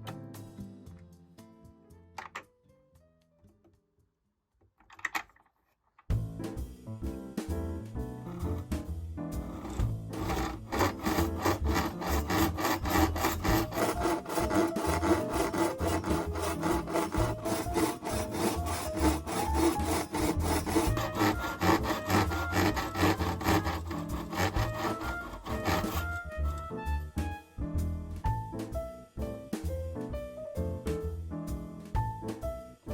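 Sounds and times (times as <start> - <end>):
hand saw cutting wood: 8.3 - 26.7.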